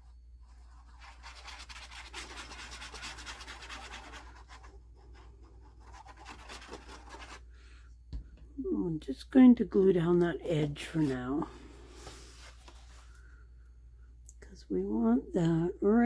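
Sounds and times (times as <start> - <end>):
scratchy rubbing on paper: 0.0 - 7.5.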